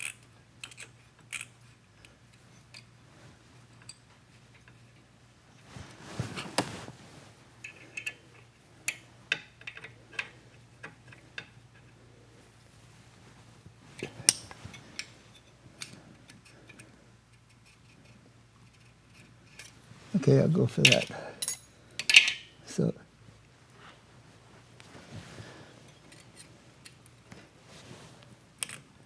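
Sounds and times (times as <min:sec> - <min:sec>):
metal tools clinking on engine: 0:20.7 - 0:22.5
tool clatter and scrape: 0:24.9 - 0:28.8.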